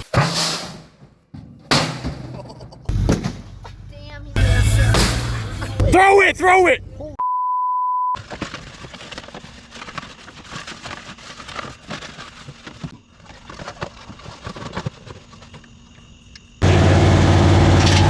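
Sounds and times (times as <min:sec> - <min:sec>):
steady beep: 0:07.2 - 0:08.2.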